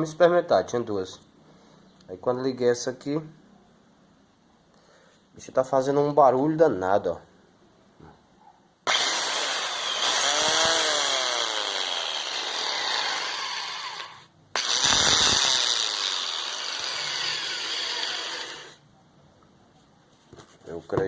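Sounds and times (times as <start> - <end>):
electric saw motor running rough: 8.9 - 18.8.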